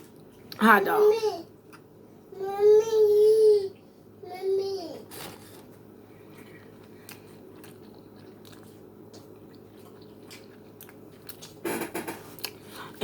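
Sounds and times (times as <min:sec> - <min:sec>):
steady low hum: 0:00.0 - 0:13.0
person chewing: 0:06.2 - 0:11.6, 0:12.2 - 0:13.0.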